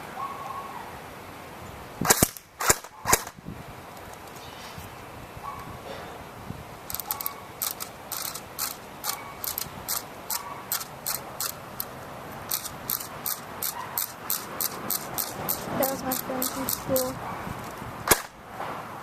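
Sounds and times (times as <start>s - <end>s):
plastic gun mechanism clicks: 2.1s - 3.4s, 6.9s - 11.9s, 12.5s - 18.3s.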